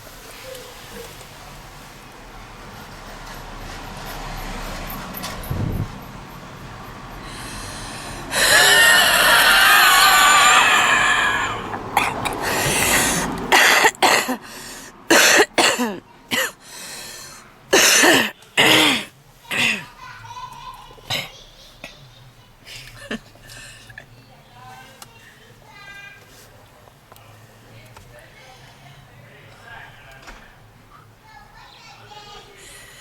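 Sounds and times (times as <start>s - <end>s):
wheezing breath: 7.2s - 9.3s, 10.6s - 13.5s, 14.4s - 15.1s, 16.5s - 17.5s, 32.6s - 33.0s
woman coughing: 8.4s - 14.4s, 15.1s - 16.6s, 17.7s - 20.0s, 21.1s - 21.4s.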